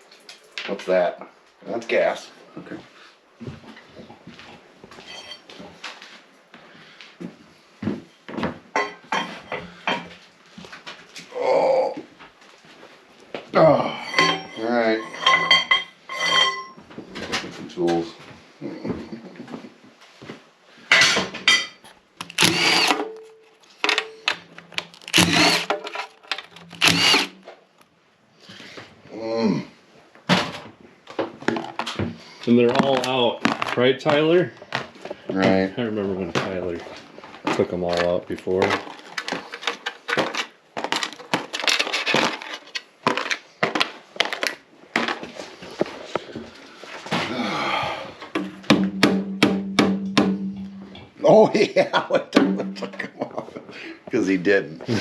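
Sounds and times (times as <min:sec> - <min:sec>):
metal clanks and scrapes: 0:05.0 - 0:05.6, 0:13.9 - 0:17.5, 0:20.9 - 0:27.4
power tool whining: 0:22.2 - 0:23.1, 0:25.1 - 0:27.4.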